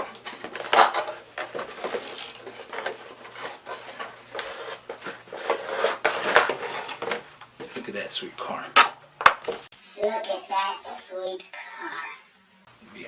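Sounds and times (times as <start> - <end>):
packaging rustling and knocking: 0.0 - 7.3.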